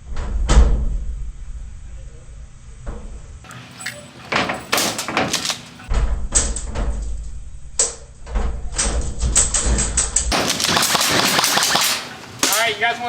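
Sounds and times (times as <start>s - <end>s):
low rumble: 0.0s - 3.5s, 5.9s - 10.4s
truck door clattering and banging: 3.8s - 7.0s.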